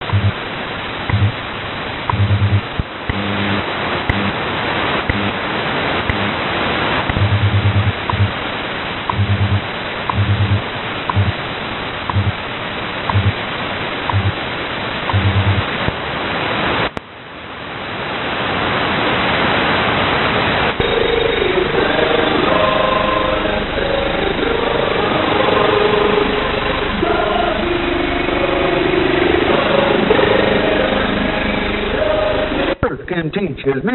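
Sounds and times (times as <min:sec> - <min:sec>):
low buzzing pulses: 0:00.0 - 0:00.5, 0:01.1 - 0:01.5, 0:02.1 - 0:04.4, 0:05.1 - 0:05.5, 0:06.1 - 0:06.4, 0:07.1 - 0:08.5, 0:09.1 - 0:11.4, 0:12.1 - 0:12.5, 0:13.1 - 0:13.4, 0:14.1 - 0:14.4, 0:15.1 - 0:15.8
faint radio station tones: 0:00.0 - 0:17.2, 0:17.8 - 0:33.9
radio static and hiss: 0:00.0 - 0:33.9.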